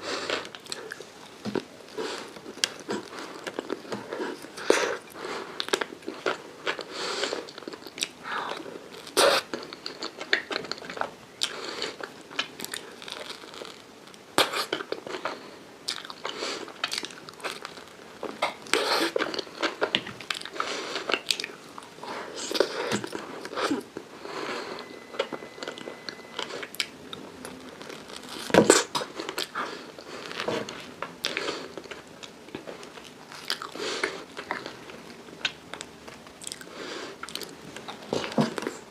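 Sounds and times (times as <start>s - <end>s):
wet chewing: 14.4s - 24.0s, 25.2s - 38.9s.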